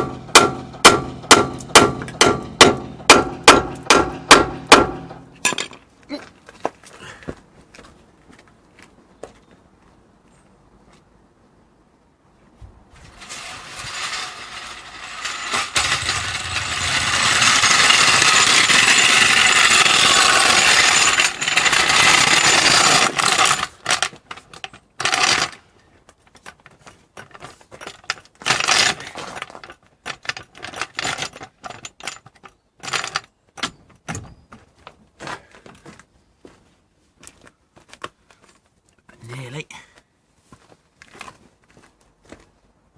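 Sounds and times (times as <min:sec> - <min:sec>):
impact gun running: 0:13.6 - 0:23.8.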